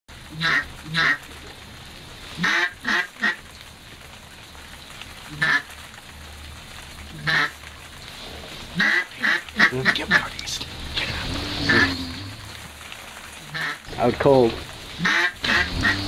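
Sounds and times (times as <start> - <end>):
man snoring with quacking sound: 11.1 - 12.5, 15.4 - 16.0.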